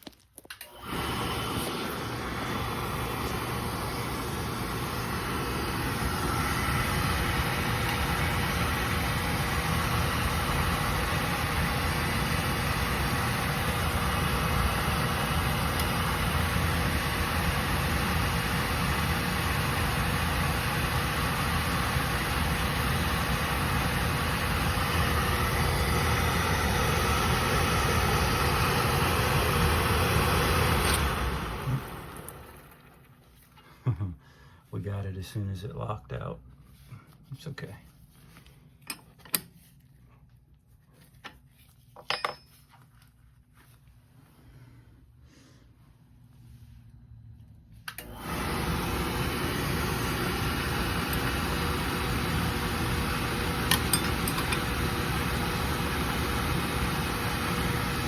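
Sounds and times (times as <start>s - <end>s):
oil burner blower hum: 0.6s - 34.5s, 47.8s - 58.0s.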